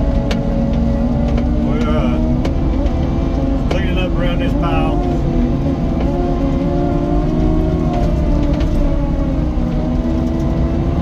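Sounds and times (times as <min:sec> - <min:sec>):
diesel loader engine droning: 0:00.0 - 0:11.0.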